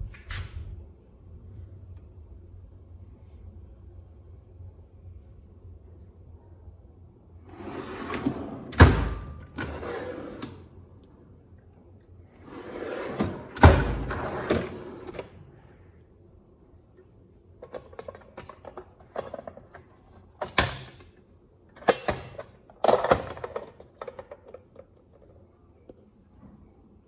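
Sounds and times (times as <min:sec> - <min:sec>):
metal drawer sliding: 0:07.5 - 0:10.7, 0:12.4 - 0:15.4
drawer clunking shut: 0:07.6 - 0:10.6, 0:12.6 - 0:15.3.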